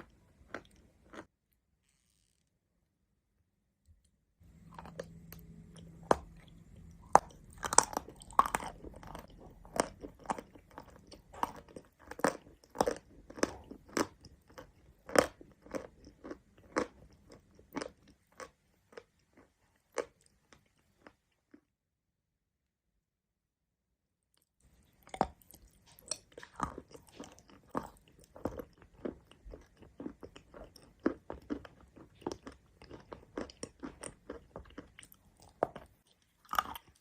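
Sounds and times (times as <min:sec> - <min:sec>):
crunchy chewing: 0:00.0 - 0:01.3, 0:04.4 - 0:21.6, 0:24.7 - 0:37.0.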